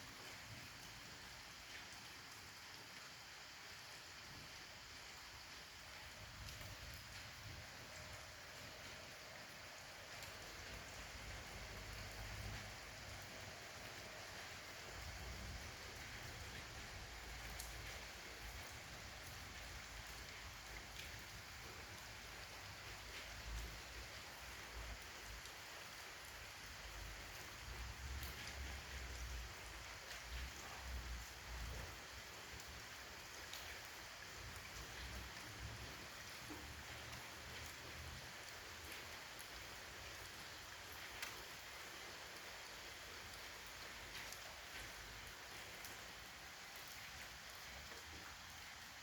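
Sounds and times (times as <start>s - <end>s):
steady rain falling: 0.0s - 49.0s.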